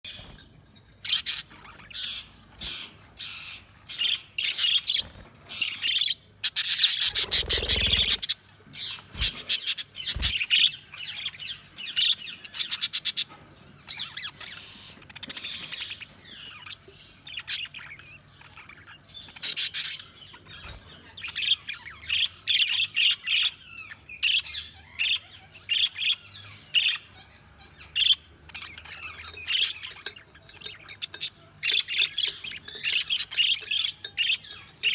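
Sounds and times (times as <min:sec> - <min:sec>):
budgerigars chirping and chattering: 0:00.1 - 0:34.9.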